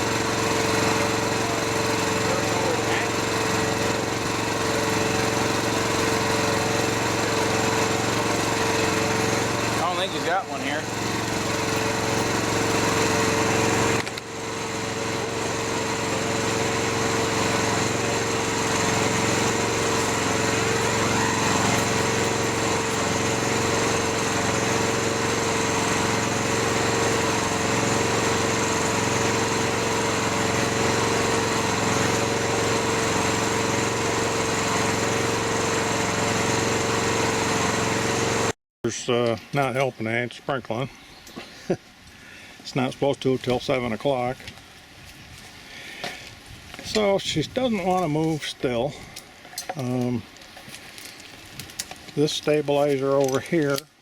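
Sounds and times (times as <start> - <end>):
excavator engine running: 0.0 - 38.5.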